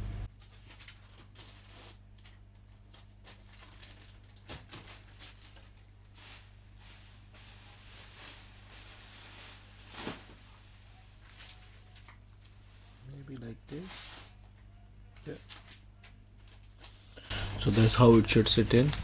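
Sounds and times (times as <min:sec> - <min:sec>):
steady low hum: 0:00.0 - 0:00.4, 0:17.0 - 0:19.0
plastic parts rustling and clicking: 0:16.4 - 0:19.0.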